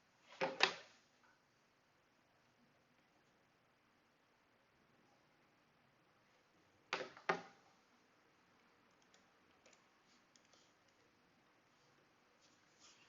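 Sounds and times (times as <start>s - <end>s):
computer mouse clicks: 8.8s - 11.1s.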